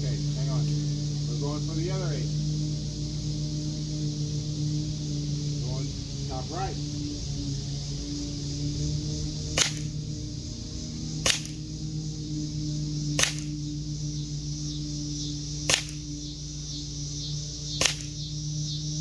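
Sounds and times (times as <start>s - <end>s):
steady hum: 0.0s - 19.0s
air pistol shots: 9.6s - 9.9s, 11.2s - 11.6s, 13.2s - 13.5s, 15.7s - 16.0s, 17.8s - 18.2s.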